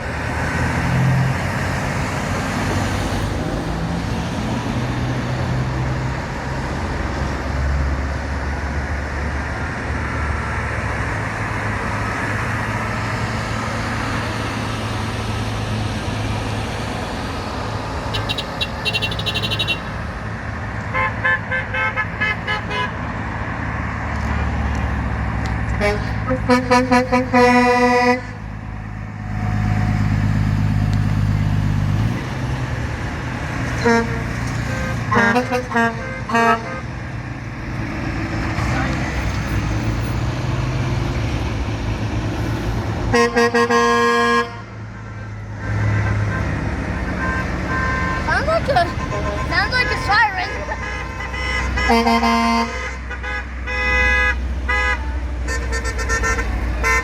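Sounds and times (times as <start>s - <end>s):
low truck engine drone: 0.0s - 57.0s
truck engine and road hum: 0.0s - 57.0s
truck horns tooting: 18.1s - 20.2s, 20.9s - 23.1s, 25.7s - 28.5s, 33.7s - 37.1s, 43.1s - 57.0s.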